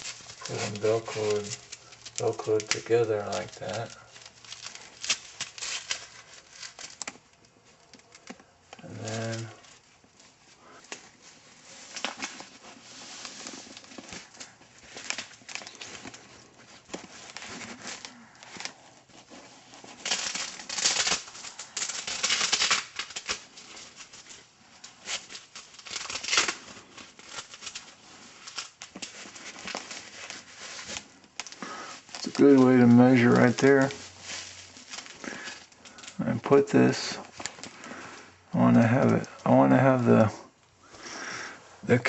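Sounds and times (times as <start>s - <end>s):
velcro ripping: 0.0s - 40.0s
fabric strap rustling and scraping: 0.0s - 42.0s.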